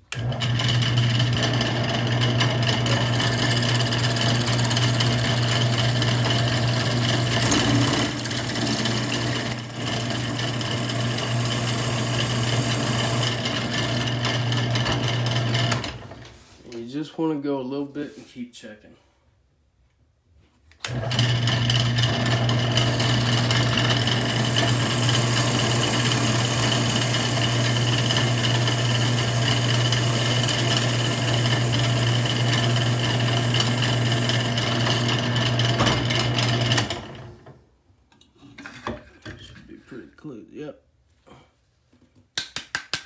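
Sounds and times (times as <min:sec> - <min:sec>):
drill press motor humming: 0:00.1 - 0:16.1, 0:20.8 - 0:37.3
drill bit drilling into screw: 0:00.6 - 0:15.8, 0:20.9 - 0:37.0.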